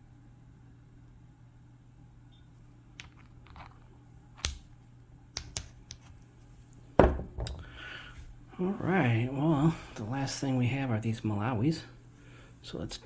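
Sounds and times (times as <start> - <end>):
low steady hum: 0.0 - 13.0
rock pieces clicking and knocking: 3.0 - 4.7, 5.4 - 6.1
loud thump: 7.0 - 7.5.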